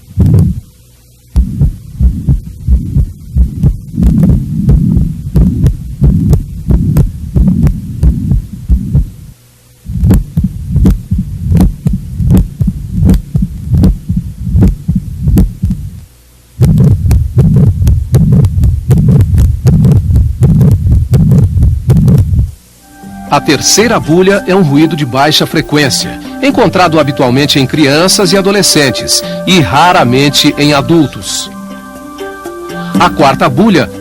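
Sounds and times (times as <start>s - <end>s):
heart murmur: 0.0s - 0.7s, 1.3s - 9.3s, 9.9s - 16.0s, 16.6s - 22.6s
heartbeat: 0.0s - 16.0s, 16.6s - 22.6s.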